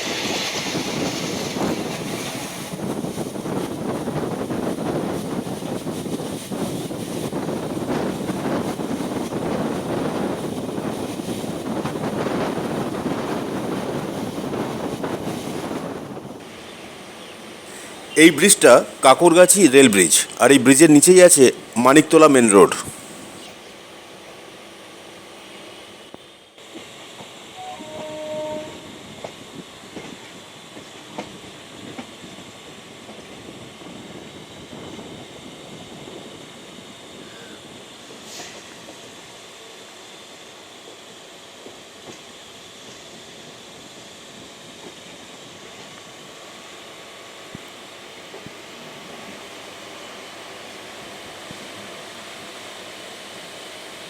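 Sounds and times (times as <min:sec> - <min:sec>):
wind buffeting microphone: 0:00.0 - 0:16.4, 0:28.7 - 0:38.2
train coach rumbling rattle: 0:00.0 - 0:24.4
train wheel and track noise: 0:00.0 - 0:54.0.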